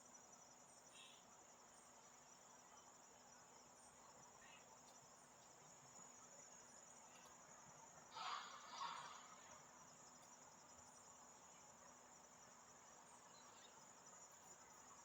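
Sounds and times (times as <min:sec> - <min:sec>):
insects trilling: 0:03.8 - 0:15.0.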